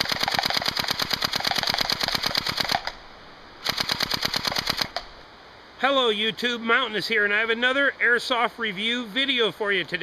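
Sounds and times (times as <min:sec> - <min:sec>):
airsoft rifle firing full auto: 0:00.0 - 0:03.0, 0:03.6 - 0:05.0.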